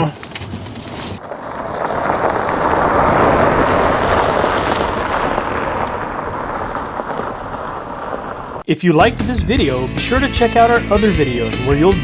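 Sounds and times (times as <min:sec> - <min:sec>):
thunder rumbling: 0:01.2 - 0:08.6.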